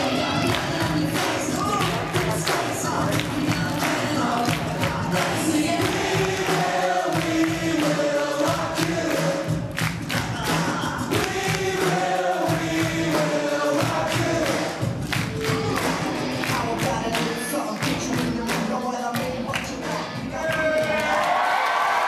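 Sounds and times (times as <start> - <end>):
choir singing sliding notes: 0.0 - 9.7, 10.3 - 17.6
percussive beat: 0.0 - 21.3.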